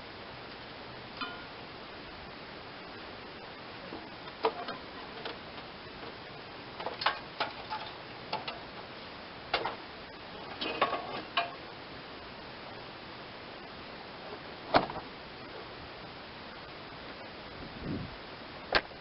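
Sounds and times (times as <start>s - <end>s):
clicks and knocks of metal hood: 14.7s - 15.1s.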